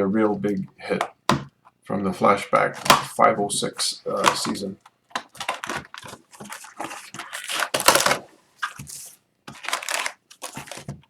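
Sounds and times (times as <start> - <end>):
foil wrappers crinkling and tearing: 5.2 - 11.0.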